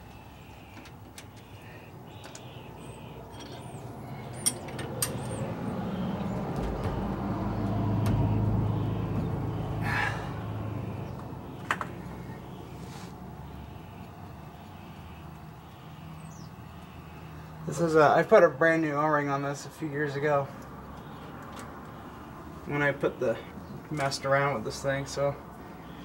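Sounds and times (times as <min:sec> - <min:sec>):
vehicle engine and tyre hum: 0:00.0 - 0:26.0
sharp metallic clicks: 0:04.3 - 0:05.5.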